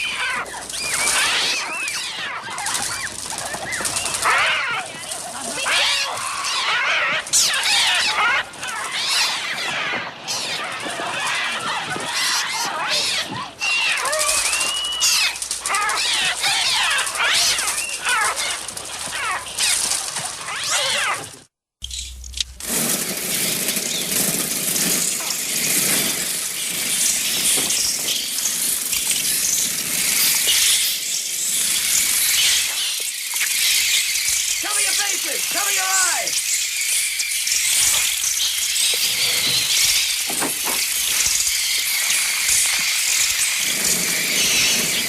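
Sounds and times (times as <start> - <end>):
hissing flock-like clamour: 0.0 - 21.0, 22.6 - 45.0
synthetic bird screeches: 12.1 - 19.9, 26.8 - 45.0.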